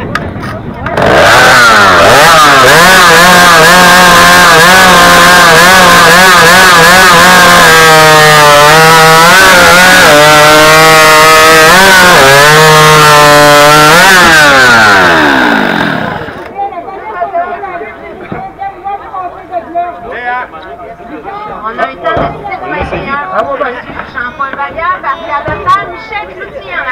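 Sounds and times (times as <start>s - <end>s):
chainsaw cutting wood: 0.9s - 16.5s.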